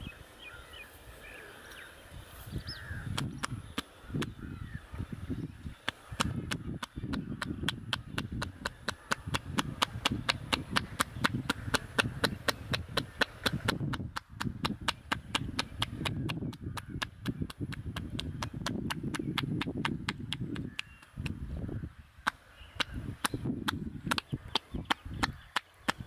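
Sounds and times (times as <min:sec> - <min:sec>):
hands striking head rhythmically: 0:05.8 - 0:21.6, 0:22.2 - 0:26.0.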